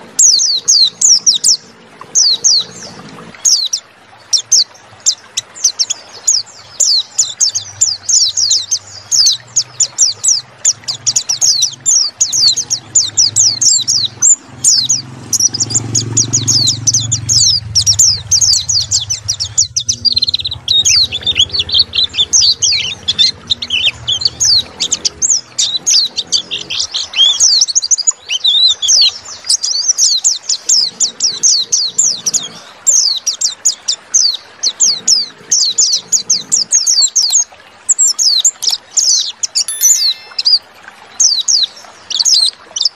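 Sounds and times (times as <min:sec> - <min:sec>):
bird rapid high chirping song: 0:04.4 - 0:30.8, 0:39.6 - 0:41.6.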